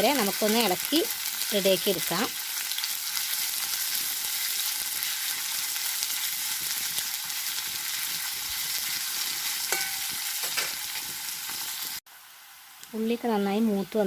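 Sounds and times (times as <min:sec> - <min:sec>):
onions sizzling in hot oil: 0:00.0 - 0:14.0
ringing metal clink: 0:09.7 - 0:10.7.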